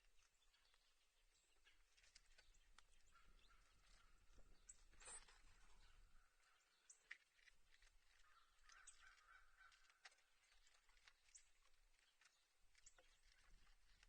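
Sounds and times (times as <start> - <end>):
faint clicks: 6.9 - 14.0.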